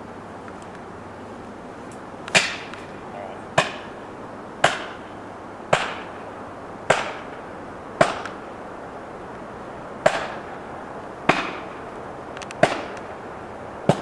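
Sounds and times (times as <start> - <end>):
hammer striking wedges: 2.3 - 2.8, 3.6 - 3.9, 4.6 - 5.0, 5.7 - 6.1, 6.9 - 7.2, 11.3 - 11.7.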